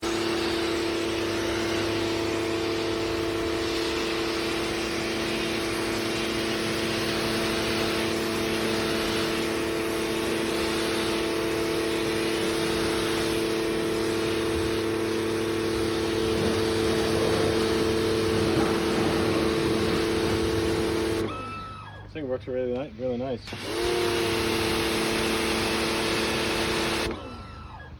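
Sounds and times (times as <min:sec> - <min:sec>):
pressure washer motor whine: 0:00.0 - 0:27.9
water spray hissing: 0:03.9 - 0:21.3.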